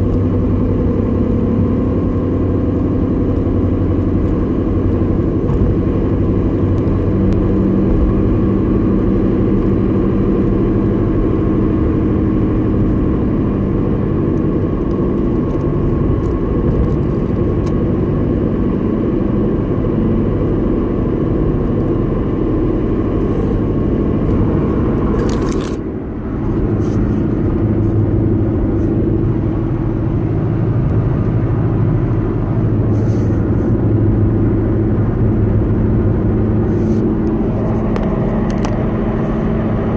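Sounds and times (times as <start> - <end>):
car engine humming: 0.0 - 39.9
whine: 20.7 - 39.9.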